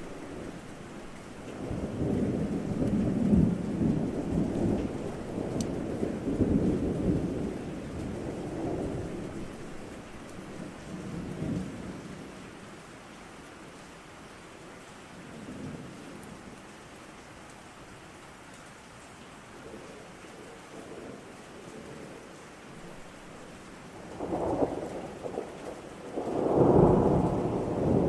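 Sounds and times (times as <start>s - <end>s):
rain hissing: 0.0s - 28.0s
rolling thunder: 1.6s - 10.0s, 24.0s - 28.0s.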